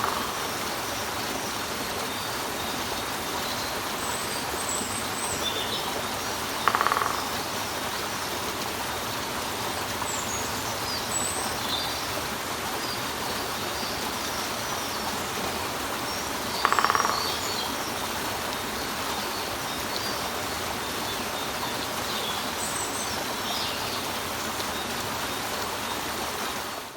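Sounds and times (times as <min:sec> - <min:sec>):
woodpecker drumming: 0:00.0 - 0:00.8, 0:06.5 - 0:07.6, 0:16.6 - 0:17.5
water running over rock: 0:00.0 - 0:26.9.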